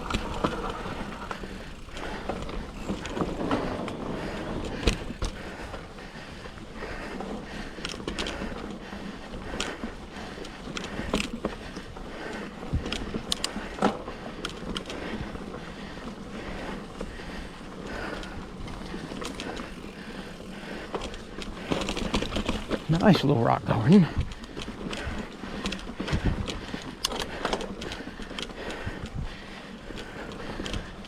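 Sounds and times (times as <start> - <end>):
bike clicking and knocking: 0.0 - 5.8, 9.4 - 15.4, 17.2 - 22.9, 24.2 - 31.0
tyre and wind noise: 0.0 - 31.0.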